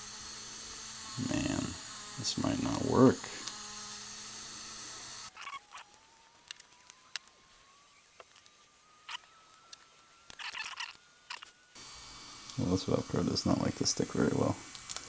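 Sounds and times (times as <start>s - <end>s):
steady background hum: 0.0s - 6.0s, 7.1s - 15.0s
faint thin whine: 0.0s - 15.0s
plastic parts clicking and scratching: 5.3s - 11.6s.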